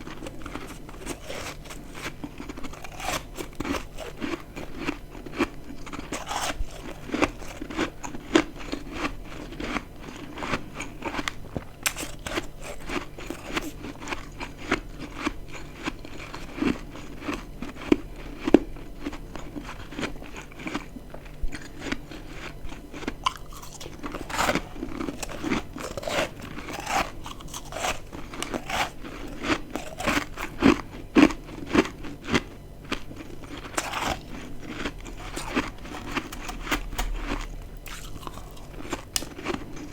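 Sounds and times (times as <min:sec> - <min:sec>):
chewing crunchy frost: 0:00.0 - 0:39.9.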